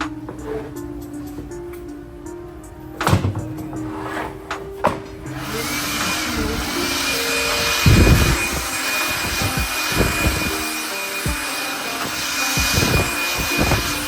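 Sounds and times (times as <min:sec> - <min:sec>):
power tool whining: 0:05.3 - 0:14.0.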